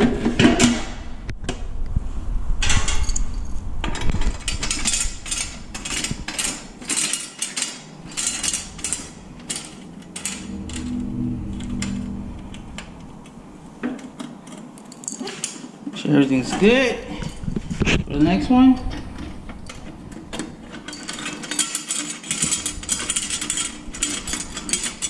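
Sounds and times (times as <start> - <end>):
vending machine clicking and rattling: 4.0 - 10.4, 18.6 - 25.0.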